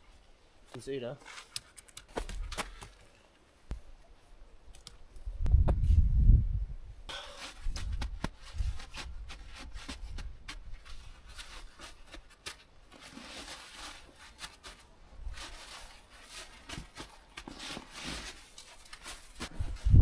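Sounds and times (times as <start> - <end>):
snow crunching and scraping: 7.2 - 20.0.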